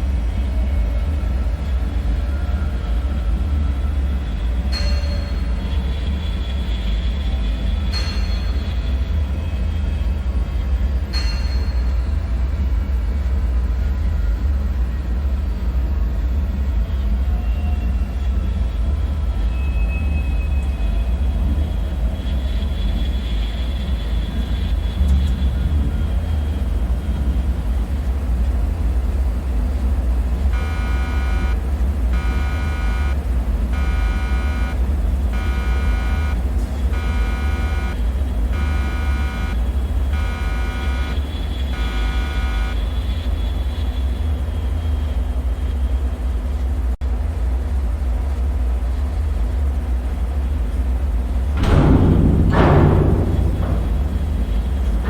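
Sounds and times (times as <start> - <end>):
deep low machinery rumble: 46.9 - 55.0.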